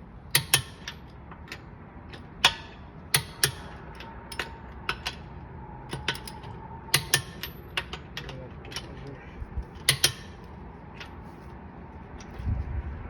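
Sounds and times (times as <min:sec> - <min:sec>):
torque wrench clicking: 0:00.3 - 0:00.9, 0:01.5 - 0:05.2, 0:09.8 - 0:10.4.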